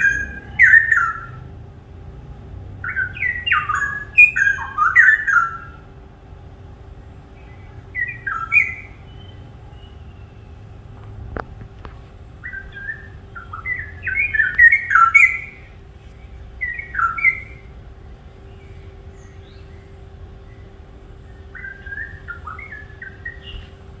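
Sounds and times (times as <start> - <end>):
songbird singing: 0.0 - 24.0.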